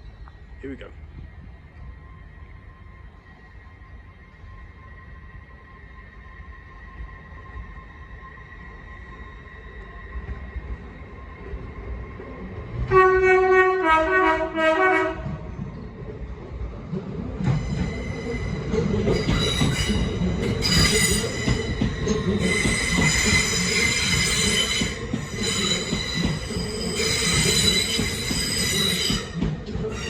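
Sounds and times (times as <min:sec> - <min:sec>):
train wheels squealing: 0:00.0 - 0:12.3, 0:17.4 - 0:30.0
train rumbling past: 0:00.0 - 0:30.0
two-tone train horn: 0:12.9 - 0:15.4.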